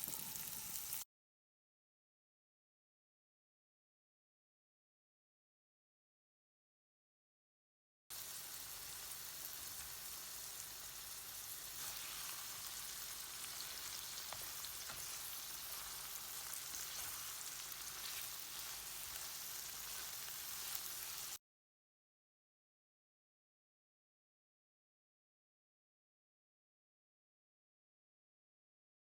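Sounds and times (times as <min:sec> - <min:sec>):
beans frying in oil: 0:00.0 - 0:01.0, 0:08.1 - 0:21.4.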